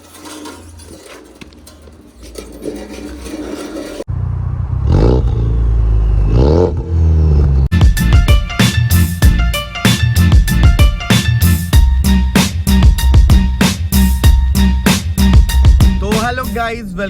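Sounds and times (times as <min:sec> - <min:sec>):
scraping and clatter: 0:00.0 - 0:04.1
car engine revving: 0:04.0 - 0:07.7.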